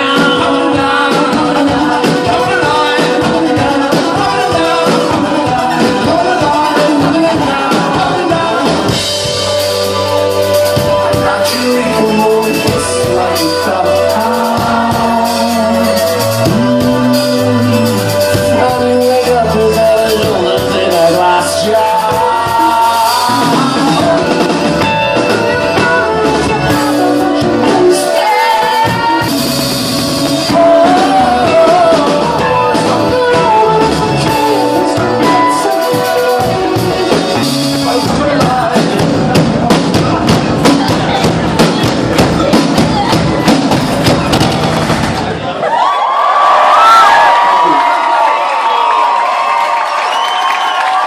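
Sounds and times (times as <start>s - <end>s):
person singing: 0.0s - 44.6s
rock band playing live: 0.0s - 51.0s.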